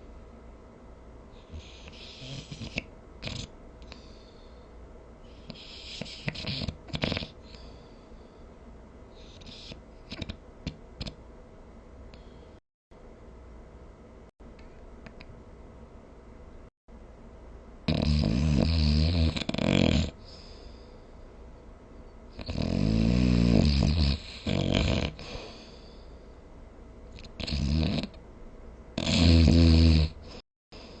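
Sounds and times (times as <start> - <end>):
person snoring: 17.9 - 20.3, 22.4 - 25.5, 29.0 - 30.4.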